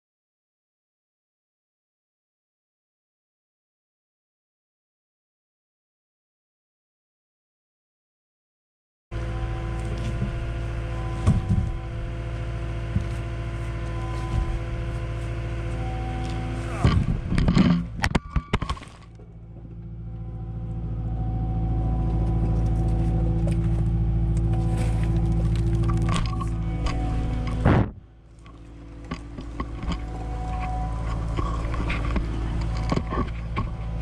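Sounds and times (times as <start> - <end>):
diesel engine running: 9.1 - 34.0
sharp knocks and clattering: 9.8 - 15.0.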